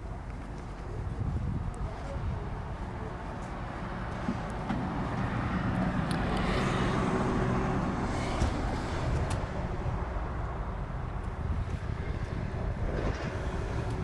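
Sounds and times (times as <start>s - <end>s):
traffic noise: 0.0s - 14.0s
vehicle engine passing: 4.0s - 10.0s.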